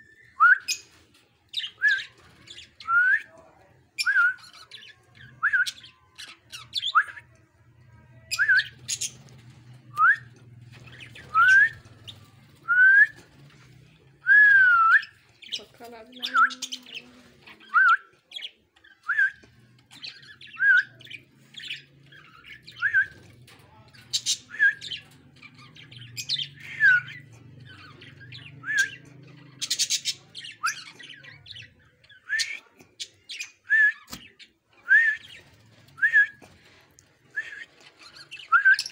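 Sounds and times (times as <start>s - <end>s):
budgerigars chirping and squawking: 8.4s - 9.6s, 10.6s - 12.3s, 19.7s - 33.6s, 37.6s - 38.9s.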